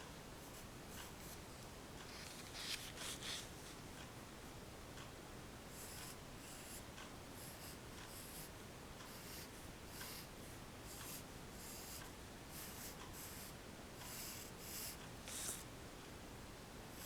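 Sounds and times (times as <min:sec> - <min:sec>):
pencil sketching on paper: 0:05.8 - 0:06.8, 0:07.4 - 0:08.5, 0:09.1 - 0:15.6.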